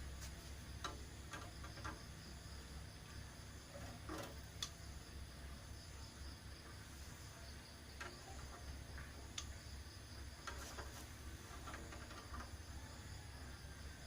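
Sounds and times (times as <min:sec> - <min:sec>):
refrigerator compressor hum: 0:00.0 - 0:14.0
faint clicks and ticks: 0:00.7 - 0:02.4, 0:03.7 - 0:04.9, 0:07.8 - 0:12.7.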